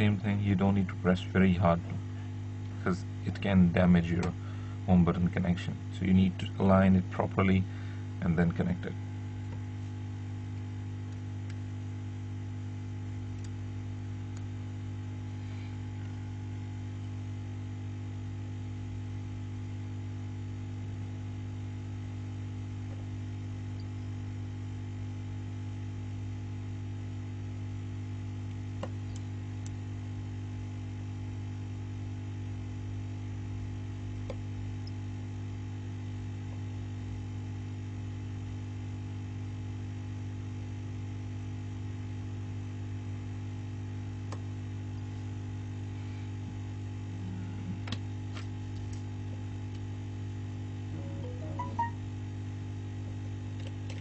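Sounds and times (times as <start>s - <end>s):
electrical mains hum: 0.0s - 54.0s.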